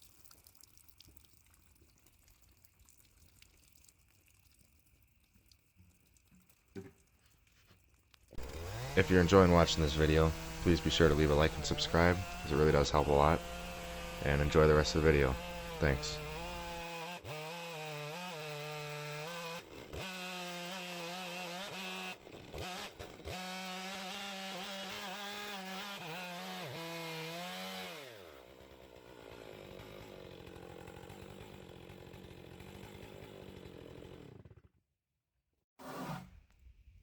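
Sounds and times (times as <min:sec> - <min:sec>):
chainsaw cutting wood: 0:08.3 - 0:34.7.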